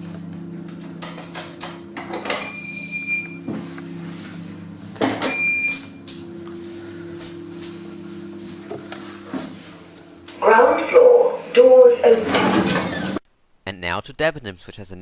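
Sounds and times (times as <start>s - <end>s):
electronic beeps: 5.3s - 5.9s.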